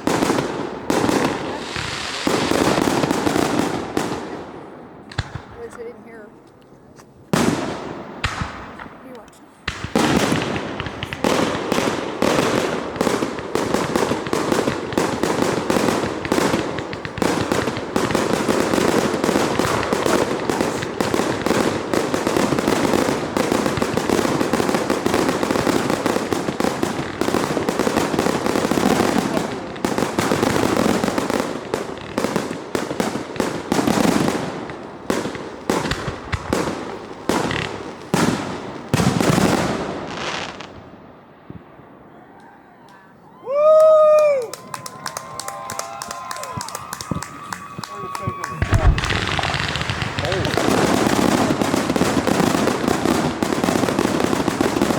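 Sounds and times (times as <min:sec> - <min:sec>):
fireworks bangs and crackling: 0:00.0 - 0:42.1, 0:43.4 - 0:54.9.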